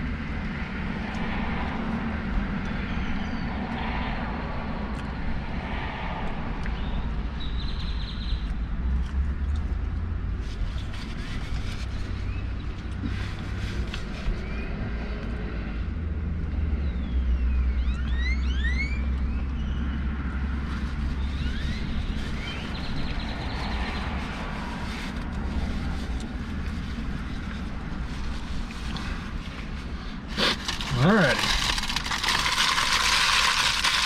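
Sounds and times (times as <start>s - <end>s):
road traffic rumble: 0.0s - 34.0s
wind: 0.0s - 34.0s.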